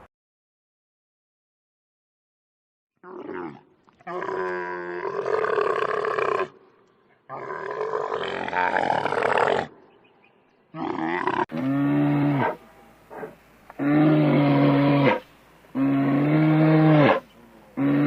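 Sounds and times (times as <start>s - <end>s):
animal calling roughly: 10.8s - 18.0s.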